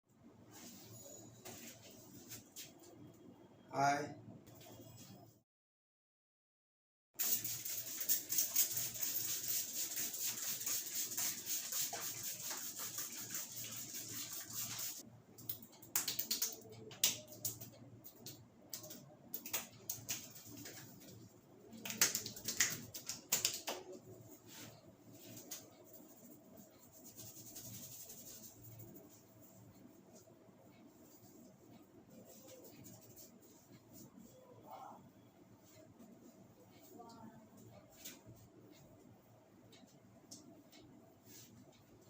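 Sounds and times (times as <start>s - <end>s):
hands scratching through hair: 7.2s - 15.0s, 24.5s - 29.2s, 32.3s - 33.6s.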